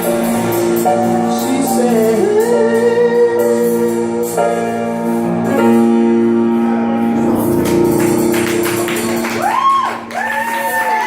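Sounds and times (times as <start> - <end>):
live band holding final chord: 7.0 - 10.2
crowd cheering: 7.0 - 11.0.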